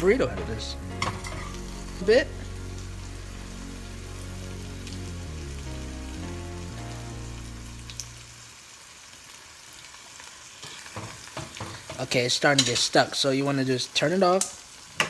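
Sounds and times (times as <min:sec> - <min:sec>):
background music with deep bass: 0:00.0 - 0:08.4
food sizzling in frying pan: 0:00.0 - 0:15.0.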